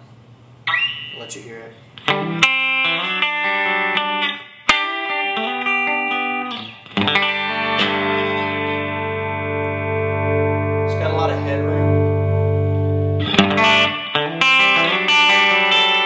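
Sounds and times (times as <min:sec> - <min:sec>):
clean electric guitar notes: 0:02.0 - 0:16.0
sustained electric guitar chord: 0:05.2 - 0:16.0.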